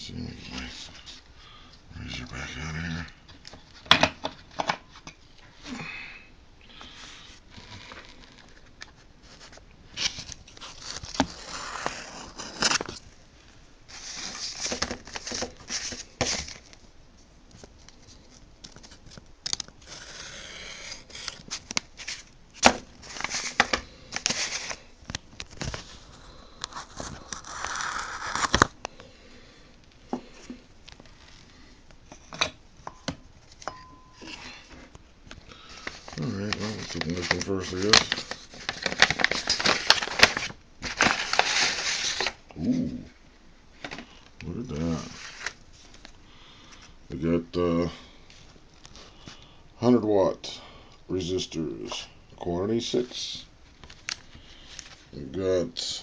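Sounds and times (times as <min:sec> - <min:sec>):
paper rustling and tearing: 0:06.9 - 0:13.1, 0:13.9 - 0:16.8, 0:17.6 - 0:28.8, 0:35.6 - 0:42.4, 0:44.7 - 0:46.0.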